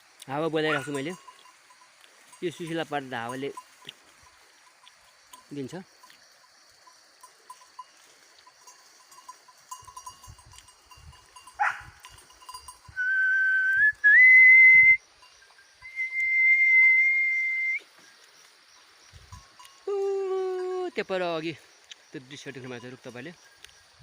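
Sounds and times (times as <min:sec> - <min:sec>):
man whistling: 0:12.9 - 0:15.0, 0:15.8 - 0:17.9.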